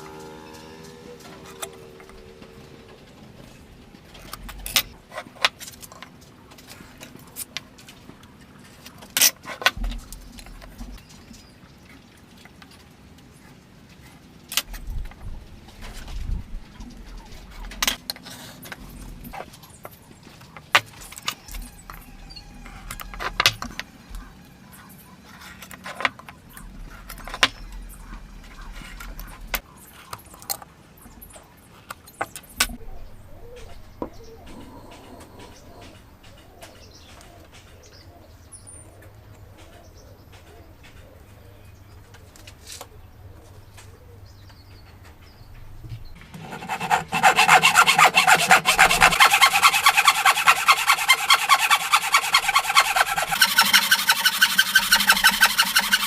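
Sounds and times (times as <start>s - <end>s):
hand tool sawing wood: 46.2s - 56.0s.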